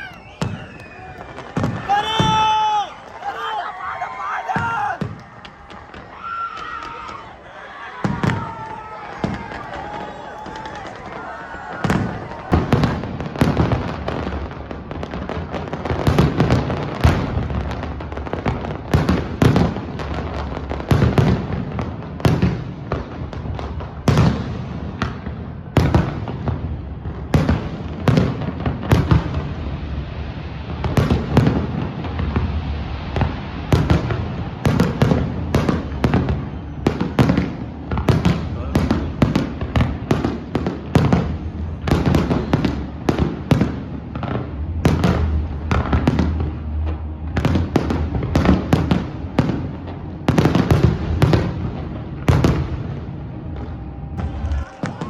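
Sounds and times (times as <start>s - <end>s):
fireworks booms and crackling: 0.0s - 55.0s
continuous rumble: 40.7s - 55.0s.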